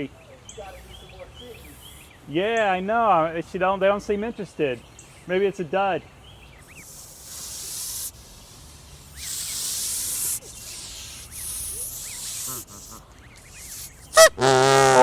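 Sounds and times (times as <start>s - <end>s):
goose hissing: 0.6s - 2.2s, 6.4s - 15.0s.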